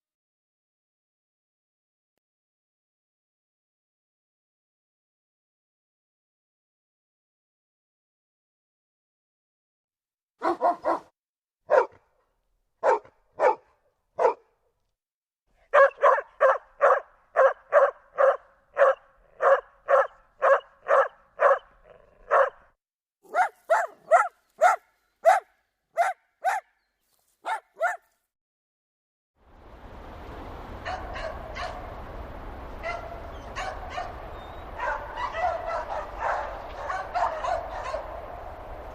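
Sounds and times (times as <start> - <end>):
dog barking: 10.4 - 11.1, 11.7 - 12.1, 12.8 - 14.5, 15.7 - 22.7, 23.3 - 26.8, 27.4 - 28.1, 30.8 - 31.9, 32.8 - 38.2.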